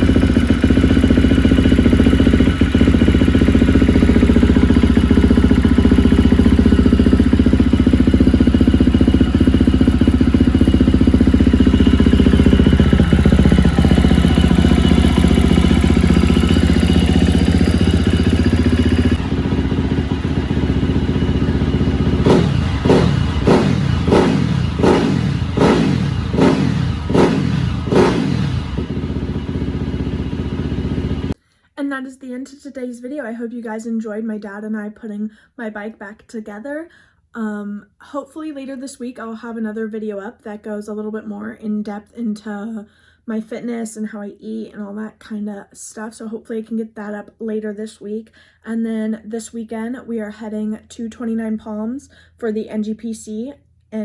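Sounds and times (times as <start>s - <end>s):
dirt bike engine idling and revving: 0.0s - 31.4s.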